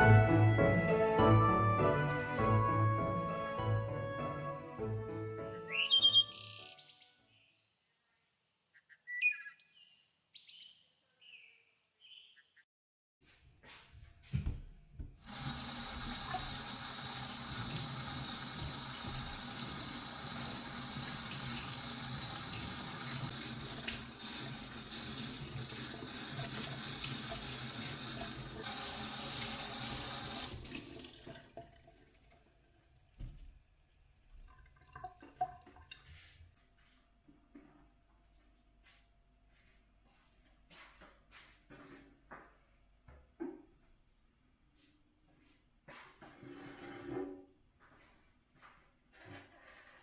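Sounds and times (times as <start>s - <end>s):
tap water running into sink: 15.2s - 33.5s, 34.4s - 36.2s.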